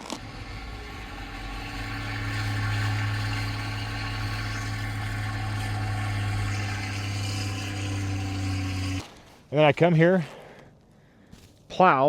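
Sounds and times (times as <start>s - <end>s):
engine humming steadily: 0.0s - 9.0s.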